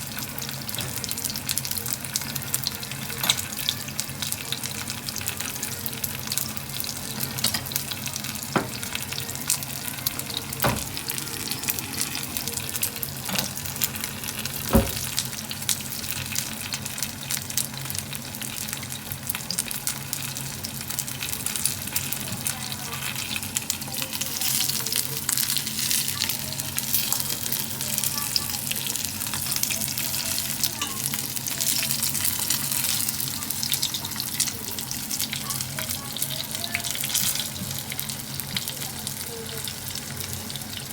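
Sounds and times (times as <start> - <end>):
chicken deep-frying in hot oil: 0.0 - 40.9.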